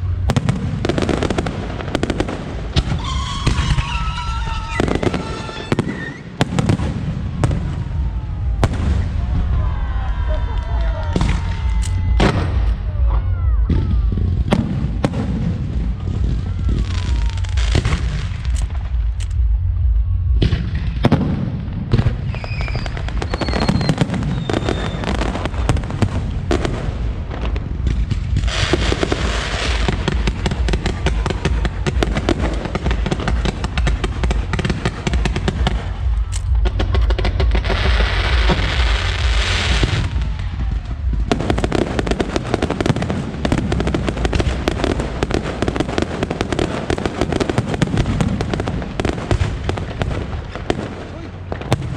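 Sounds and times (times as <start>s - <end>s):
rapid firework crackling: 0.0s - 13.1s, 13.7s - 19.5s, 20.4s - 51.9s
fireworks bursting and booming: 0.0s - 51.9s
falling firework whistles: 2.8s - 6.7s, 22.2s - 25.7s.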